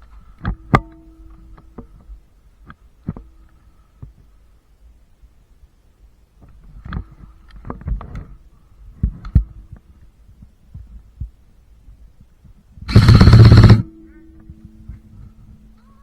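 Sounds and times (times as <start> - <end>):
airsoft gun full-auto burst: 12.9 - 13.9.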